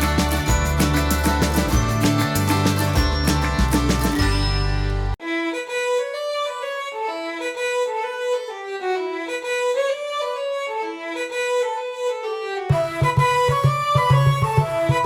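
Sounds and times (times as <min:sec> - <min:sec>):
bass-heavy music track: 0:00.0 - 0:05.2
solo bowed string melody: 0:00.0 - 0:15.0.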